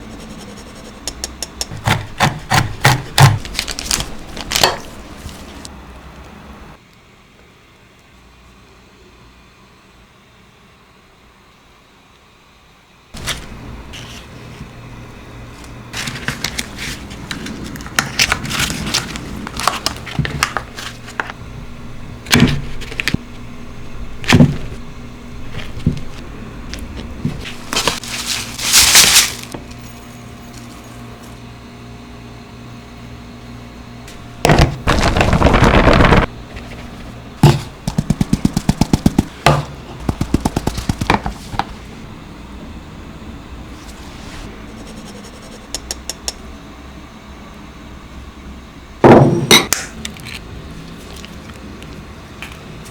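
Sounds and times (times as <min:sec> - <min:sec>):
quick even taps: 0:37.9 - 0:39.4.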